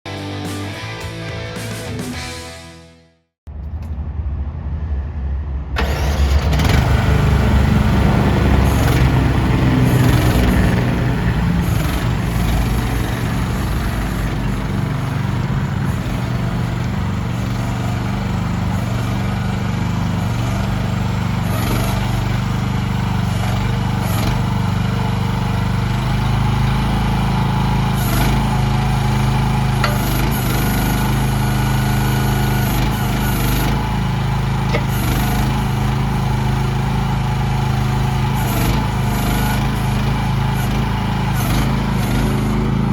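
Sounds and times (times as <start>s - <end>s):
mini excavator engine running: 5.8s - 42.9s.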